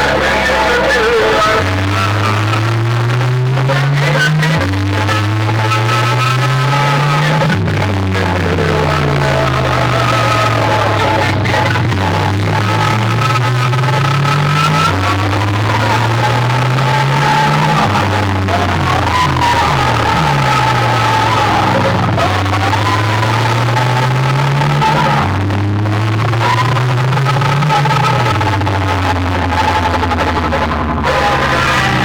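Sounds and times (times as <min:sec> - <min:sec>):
deep sliding bass notes: 0:00.0 - 0:32.0
loud dance music: 0:00.0 - 0:32.0.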